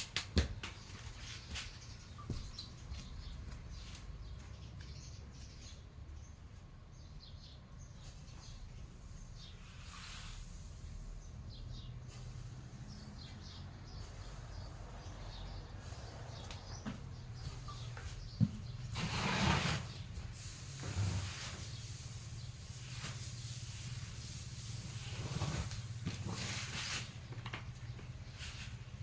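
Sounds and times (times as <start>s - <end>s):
small birds chirping: 0.0s - 29.0s
rustling: 18.9s - 29.0s.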